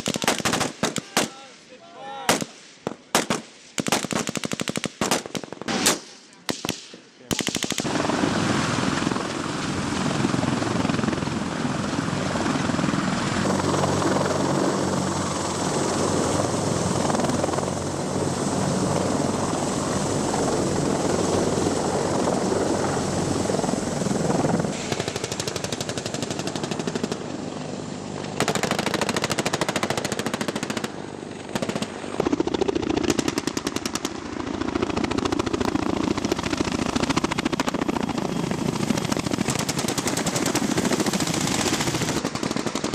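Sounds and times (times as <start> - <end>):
rapid automatic gunfire: 0.0 - 1.4, 3.1 - 8.0, 24.8 - 27.2, 28.4 - 34.2, 39.1 - 42.9
helicopter thudding drone: 7.7 - 42.9.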